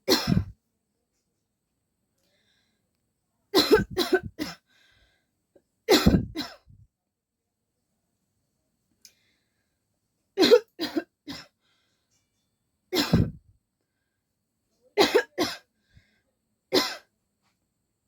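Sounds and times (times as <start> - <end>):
person coughing: 0.1 - 0.5, 3.6 - 4.6, 5.9 - 6.7, 13.0 - 13.4, 15.0 - 15.6.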